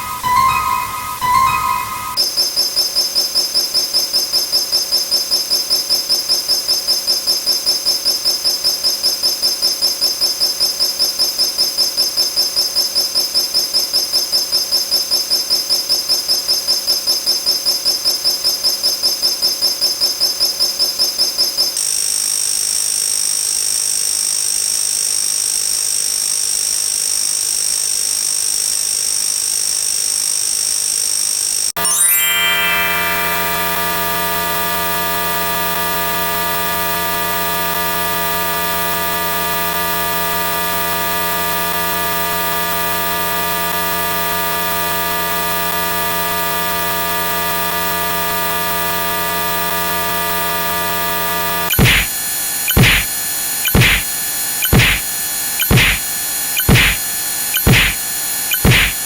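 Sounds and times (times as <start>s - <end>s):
electronic alarm beeping: 0.0s - 21.7s, 31.8s - 34.6s, 51.7s - 52.1s, 52.7s - 59.0s.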